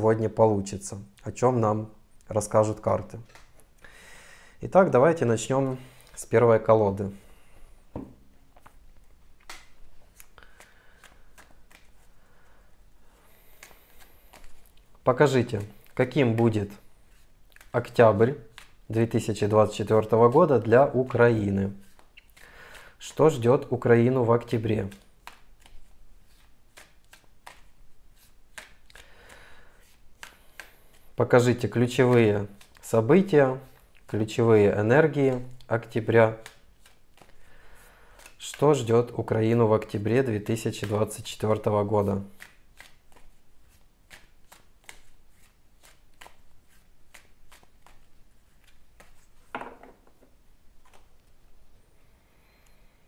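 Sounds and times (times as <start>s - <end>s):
cards being shuffled: 3.0s - 3.8s, 8.5s - 12.2s, 13.4s - 23.4s, 24.3s - 49.6s, 50.8s - 51.4s
cards slapping: 3.2s - 3.8s, 8.0s - 12.2s, 13.4s - 18.9s, 24.6s - 34.4s, 35.1s - 38.9s, 40.2s - 49.7s, 50.8s - 51.4s.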